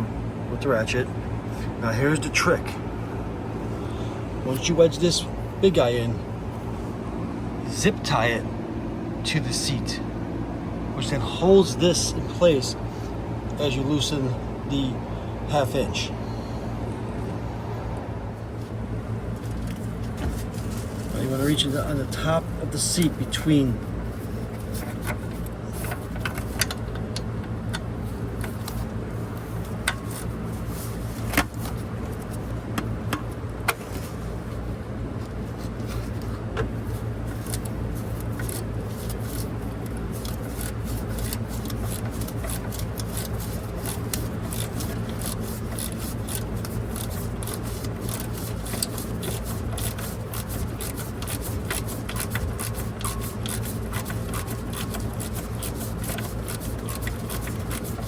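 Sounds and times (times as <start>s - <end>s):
steady low hum: 0.0s - 58.0s
metal wrenches scraping and clinking: 20.5s - 26.8s, 37.3s - 58.0s
ratchet clicking: 29.4s - 30.3s, 37.3s - 58.0s.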